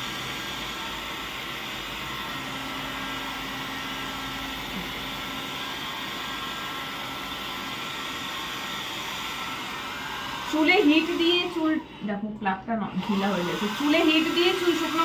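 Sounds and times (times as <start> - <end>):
hair dryer blowing air: 0.0 - 15.0.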